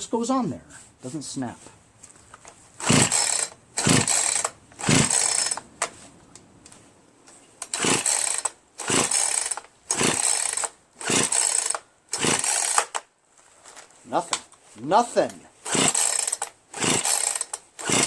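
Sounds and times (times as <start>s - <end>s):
chainsaw recoil starter pulls: 2.8s - 5.9s, 7.6s - 13.1s, 15.2s - 18.0s.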